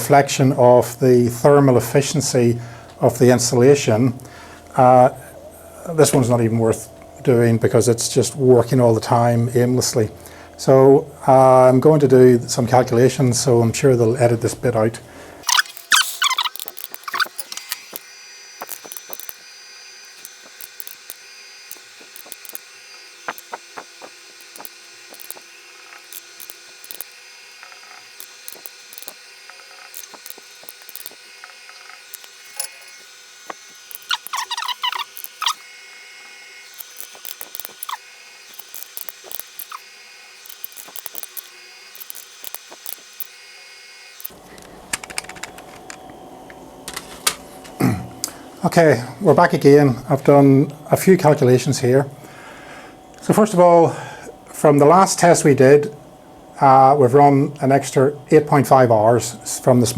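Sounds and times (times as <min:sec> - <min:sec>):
faint electrical hum: 0:00.0 - 0:59.9
squeaky scratching: 0:15.4 - 0:18.0, 0:18.6 - 0:19.4, 0:20.0 - 0:35.6, 0:36.6 - 0:43.4, 0:44.1 - 0:44.3.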